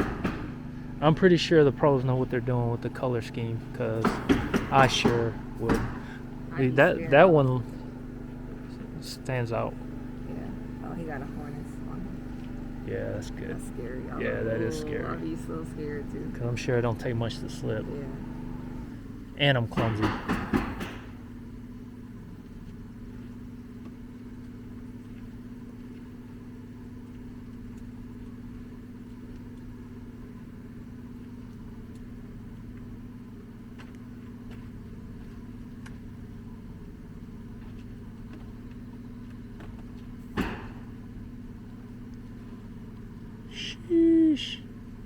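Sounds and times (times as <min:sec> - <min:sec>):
engine idling: 0:00.0 - 0:45.0
sharp knock: 0:19.8 - 0:21.2.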